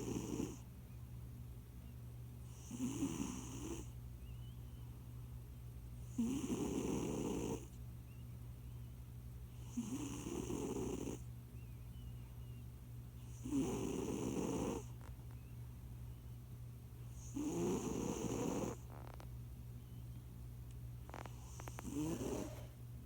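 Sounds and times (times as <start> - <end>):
cat snoring: 0.0 - 0.6, 2.5 - 4.0, 6.0 - 7.8, 9.6 - 11.3, 13.3 - 15.0, 17.1 - 19.2, 21.1 - 22.7.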